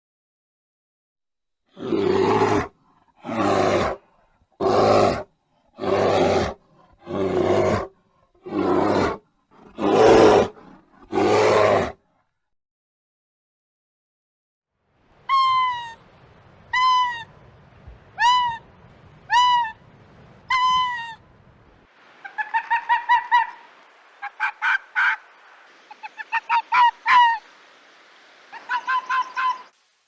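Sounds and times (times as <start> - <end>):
fox yelping: 19.3 - 19.8, 20.5 - 21.2, 28.5 - 29.7.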